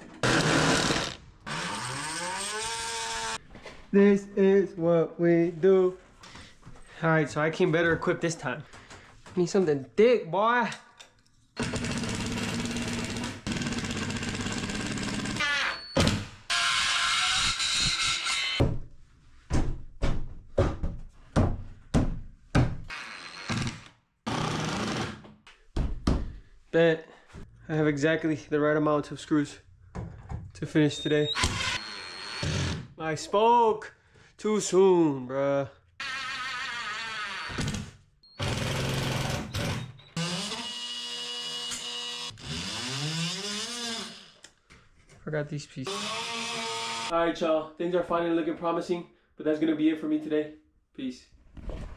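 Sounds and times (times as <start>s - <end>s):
power drill whine: 0.2s - 3.4s, 11.6s - 18.6s, 31.3s - 32.8s, 36.0s - 37.8s, 38.4s - 44.4s, 45.9s - 47.1s.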